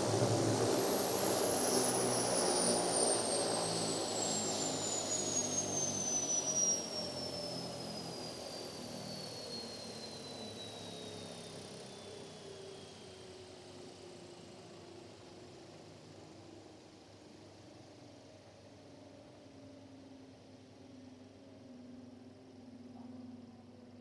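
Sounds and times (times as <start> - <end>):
helicopter rotor winding down: 0.0 - 9.1
helicopter turbine whine: 0.0 - 22.9.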